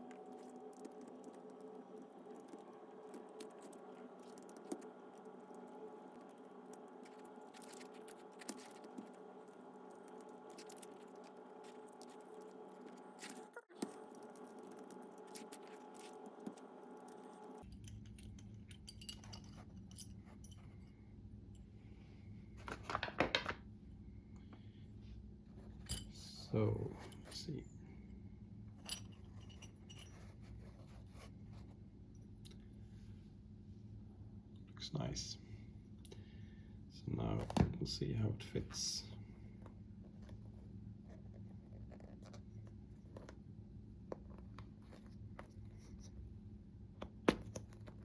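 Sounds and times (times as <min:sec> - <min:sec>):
faint steady hum: 0:00.0 - 0:48.0
small metal parts clinking: 0:00.1 - 0:20.8, 0:25.8 - 0:26.2, 0:28.8 - 0:30.4.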